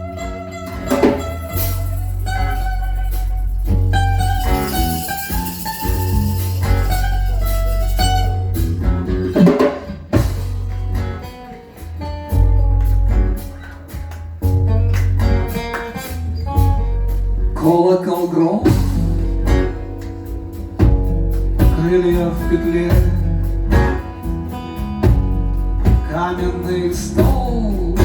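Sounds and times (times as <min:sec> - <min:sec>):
drums: 0:00.0 - 0:28.0
guitar: 0:00.0 - 0:28.0
instrumental band music: 0:00.0 - 0:28.0.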